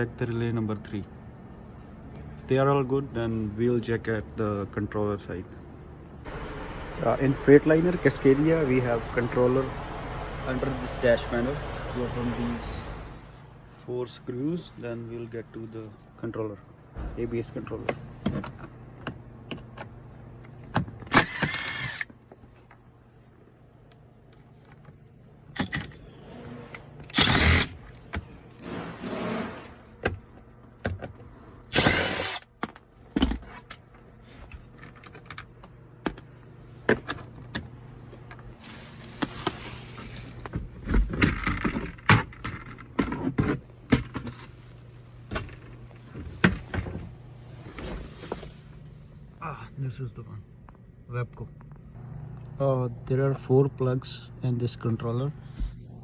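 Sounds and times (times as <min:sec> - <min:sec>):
low steady hum: 0:00.0 - 0:28.6, 0:29.5 - 0:56.0
power drill-driver running: 0:21.1 - 0:22.1, 0:27.1 - 0:27.8, 0:31.7 - 0:32.4.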